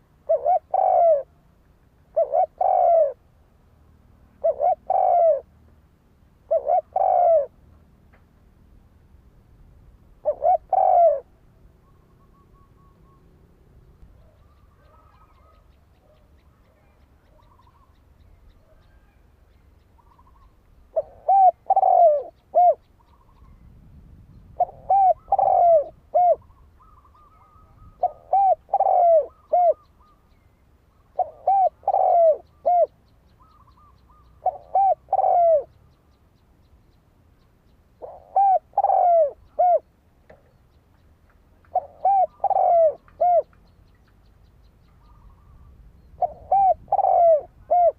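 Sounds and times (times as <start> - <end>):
dove cooing: 0.0 - 1.4, 2.1 - 3.3, 4.4 - 5.5, 6.4 - 7.6, 10.2 - 13.2, 14.1 - 18.0, 20.0 - 23.5, 24.6 - 30.3, 31.0 - 35.8, 38.0 - 39.9, 41.7 - 43.6, 45.0 - 47.9
faint bird chirps: 11.7 - 47.9.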